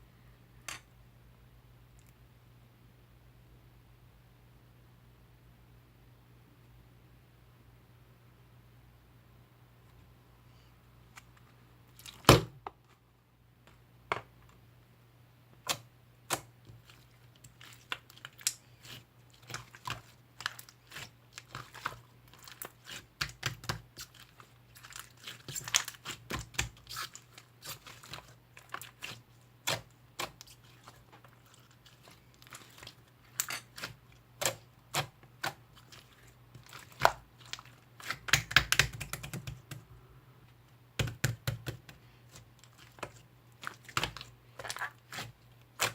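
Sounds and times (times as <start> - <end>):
slime squished by hand: 15.6 - 39.7.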